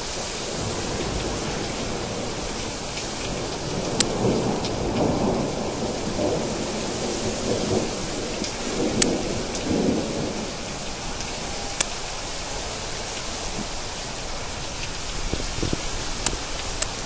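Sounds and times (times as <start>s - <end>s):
steady rain: 0.0s - 17.0s
thunder rumbling: 0.0s - 17.0s
raindrop ticks: 2.2s - 6.3s, 8.2s - 12.2s, 14.7s - 17.0s.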